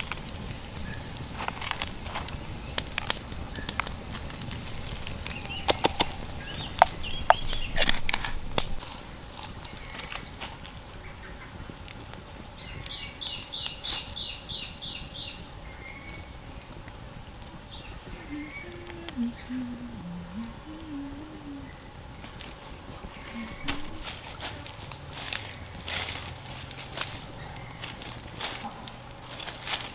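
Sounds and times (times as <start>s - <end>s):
bird calling: 4.7s - 10.4s, 17.6s - 29.0s
high-pitched hum: 18.0s - 22.1s, 23.2s - 24.9s.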